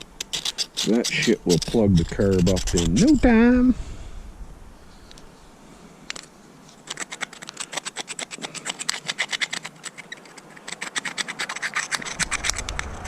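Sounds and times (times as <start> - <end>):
scratchy scraping strokes: 0.0 - 3.6, 6.6 - 13.0.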